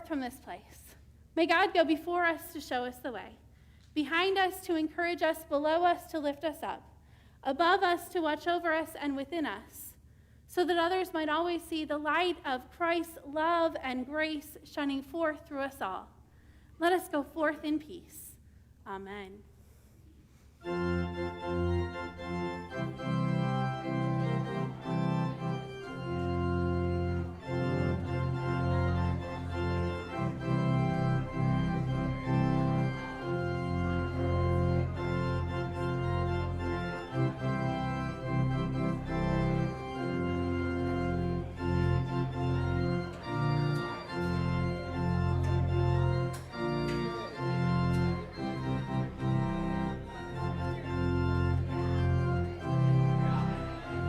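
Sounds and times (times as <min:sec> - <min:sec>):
organ chords: 0:20.6 - 0:54.0.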